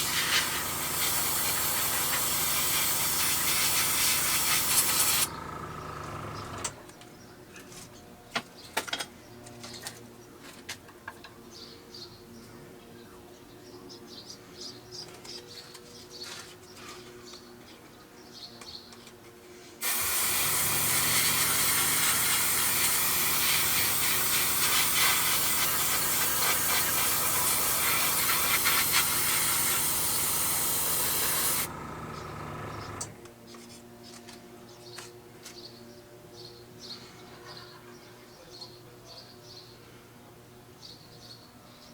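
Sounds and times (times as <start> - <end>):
airbrush hissing air: 0.0 - 5.3, 19.8 - 31.7
air compressor humming: 0.0 - 6.8, 19.8 - 33.2.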